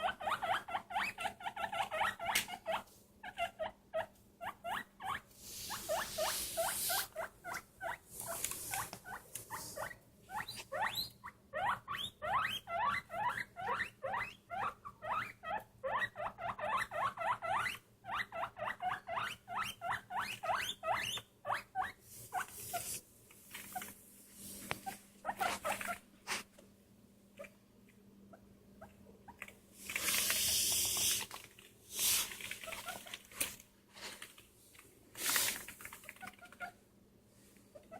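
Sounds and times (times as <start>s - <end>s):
small pet squeaking: 0.0s - 22.9s, 24.8s - 26.0s, 32.6s - 33.2s
hissing rustling noise: 29.8s - 34.4s, 35.1s - 36.0s.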